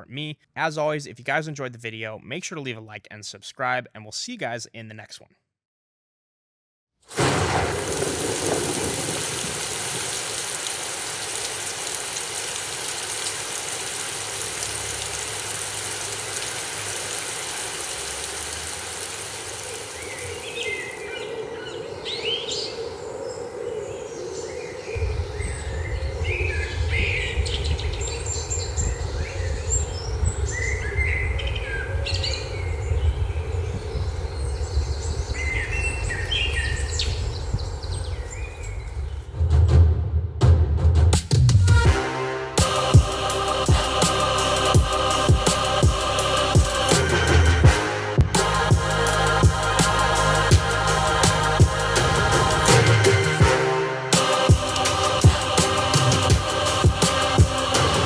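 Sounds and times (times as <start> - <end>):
steady hiss: 7.1 - 23.6, 42.6 - 47.6, 48.4 - 53.5, 54.2 - 58.0
birds chirping: 7.8 - 39.3
deep bass: 39.5 - 58.0.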